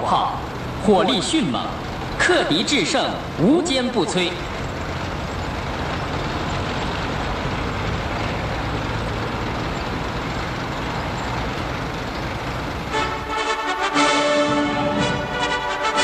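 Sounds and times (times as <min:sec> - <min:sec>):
heavy engines rumbling: 0:00.0 - 0:16.0
road noise: 0:00.0 - 0:16.0
brass band playing: 0:12.9 - 0:16.0.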